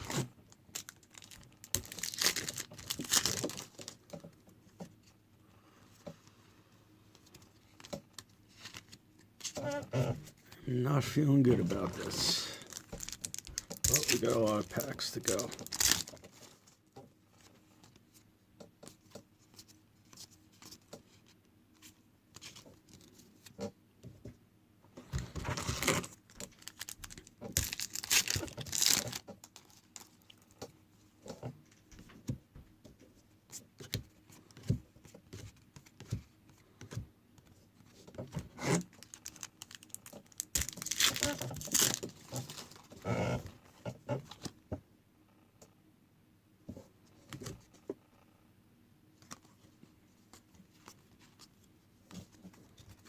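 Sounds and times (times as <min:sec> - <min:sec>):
wrappers tearing and crinkling: 0:00.0 - 0:04.0, 0:11.8 - 0:16.3, 0:25.6 - 0:30.4, 0:38.7 - 0:42.9.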